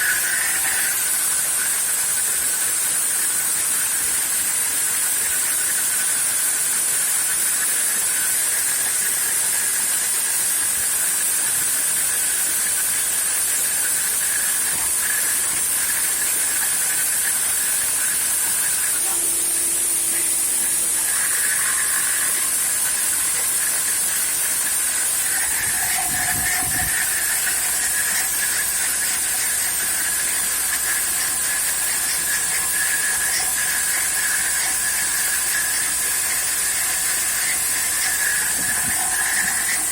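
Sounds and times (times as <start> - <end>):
end mill cutting metal: 0.0 - 3.0, 11.2 - 39.9
router spindle whine: 0.0 - 39.9.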